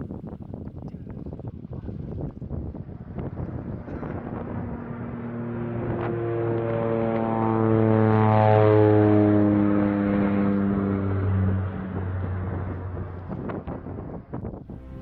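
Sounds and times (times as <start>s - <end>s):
engine droning hum passing by: 3.0s - 15.0s.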